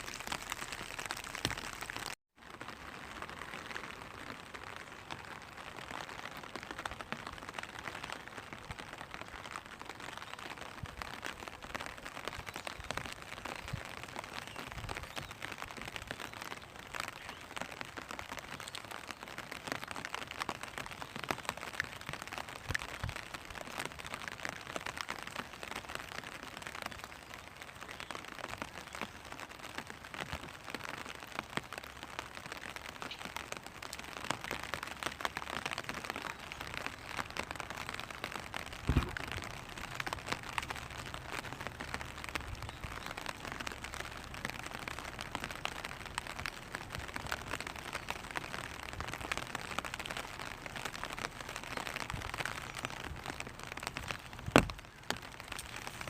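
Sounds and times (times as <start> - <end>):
rain pattering on an umbrella: 0.0 - 56.0
heavy thud: 38.9 - 39.3.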